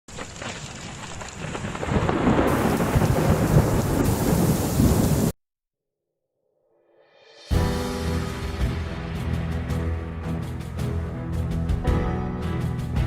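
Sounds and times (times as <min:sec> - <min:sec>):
storm rumble: 0:00.1 - 0:05.3
rain-like hiss: 0:00.1 - 0:05.4, 0:07.5 - 0:10.5.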